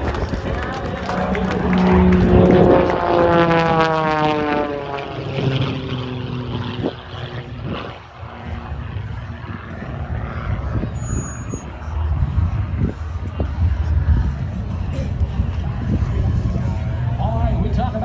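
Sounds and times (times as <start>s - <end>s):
propeller airplane flying past: 0.0s - 18.0s.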